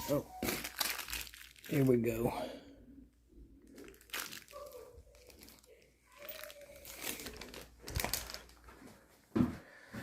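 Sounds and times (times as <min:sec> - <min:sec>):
packaging crinkling and rustling: 0:00.0 - 0:02.3, 0:03.6 - 0:08.8.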